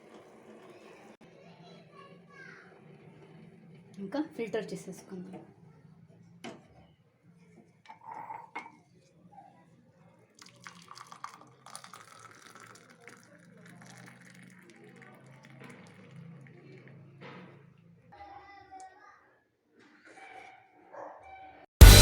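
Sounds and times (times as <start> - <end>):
liquid pouring through a strainer: 10.4 - 17.4.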